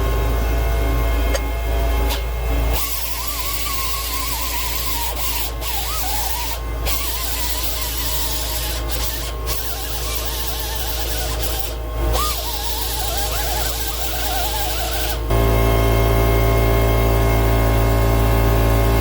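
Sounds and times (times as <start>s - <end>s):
electric grinder on steel: 2.1s - 15.4s.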